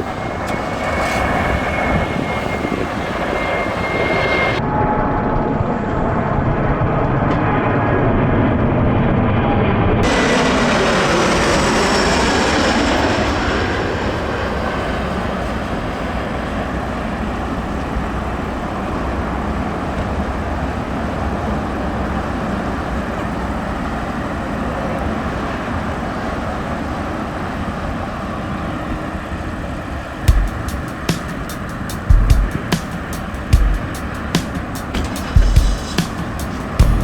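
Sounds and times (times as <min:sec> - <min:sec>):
jet airliner landing rumble: 0:00.0 - 0:37.0.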